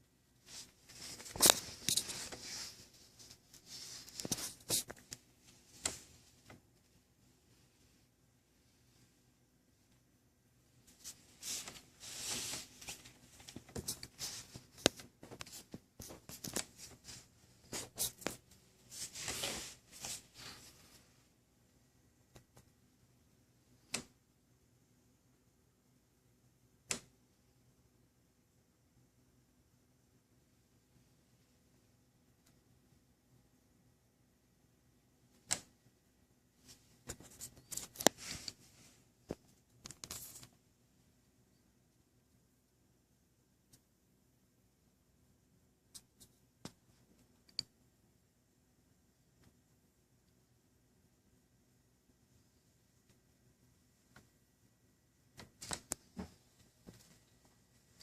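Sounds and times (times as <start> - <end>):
close rustling and scraping: 0.4 - 8.0, 10.8 - 21.2.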